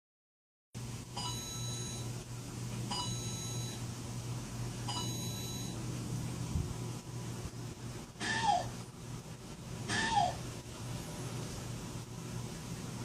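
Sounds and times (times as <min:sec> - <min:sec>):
steady low hum: 0:00.8 - 0:13.0
electronic beeps: 0:02.9 - 0:03.8, 0:04.9 - 0:05.8.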